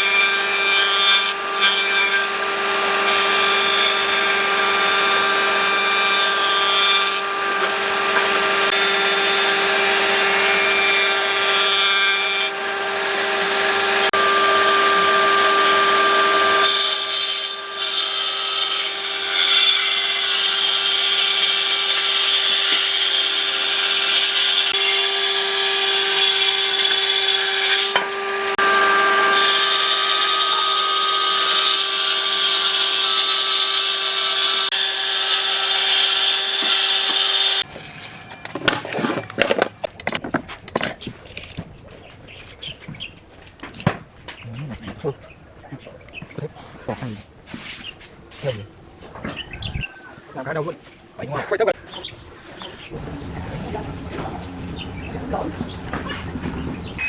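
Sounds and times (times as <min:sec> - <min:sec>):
rough rasping of wood cutting: 0:00.0 - 0:28.6, 0:29.2 - 0:37.7
power tool motor whine: 0:12.2 - 0:39.7.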